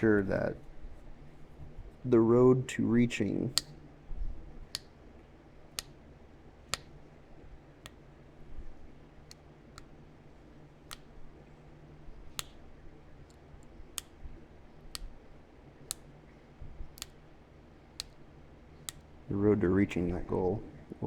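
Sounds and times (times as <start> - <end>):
faint low hum: 0.0 - 21.0.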